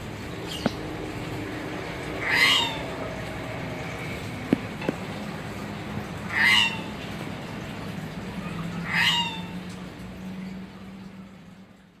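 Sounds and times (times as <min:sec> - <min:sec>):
crow calls: 0:02.2 - 0:02.9, 0:06.3 - 0:06.9.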